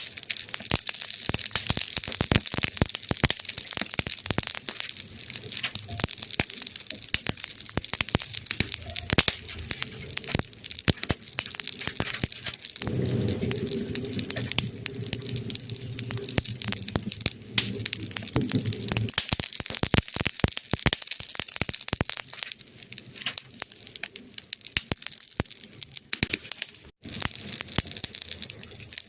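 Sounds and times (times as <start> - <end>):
campfire wood crackling and popping: 0.0 - 29.0
low hum: 12.8 - 19.1.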